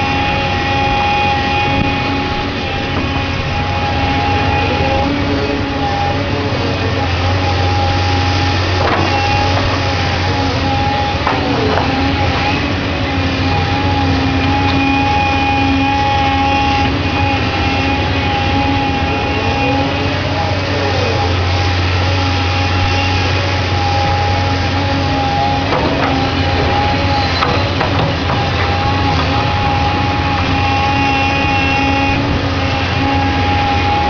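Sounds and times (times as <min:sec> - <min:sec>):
excavator diesel engine running: 0:00.0 - 0:34.0
steady whine: 0:00.0 - 0:34.0
knocks: 0:25.7 - 0:29.8.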